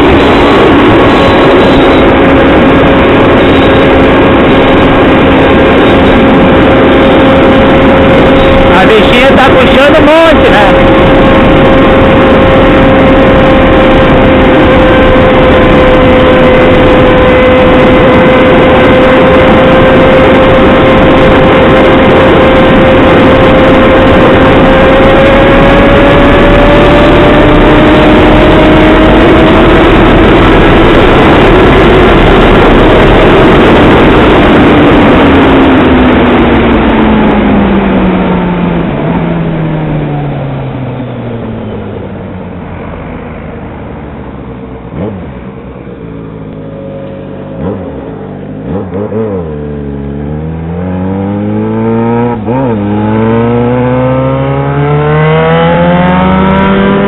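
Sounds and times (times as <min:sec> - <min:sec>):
motorcycle engine revving high: 0:00.0 - 0:57.0
rushing noise: 0:00.0 - 0:57.0.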